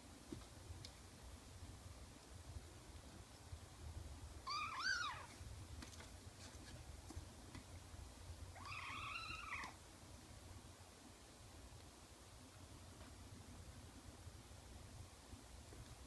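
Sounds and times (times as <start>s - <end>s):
kitten mewing: 4.4s - 5.3s, 8.6s - 9.8s.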